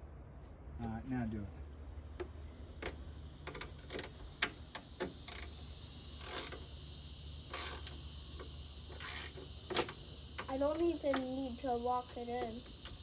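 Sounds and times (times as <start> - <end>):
ratchet wrench clicking: 6.2 - 6.8, 7.4 - 11.4.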